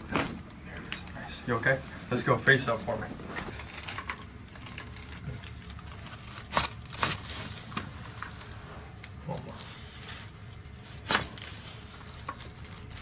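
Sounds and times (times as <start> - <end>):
soft rustling on table: 0.6 - 5.5.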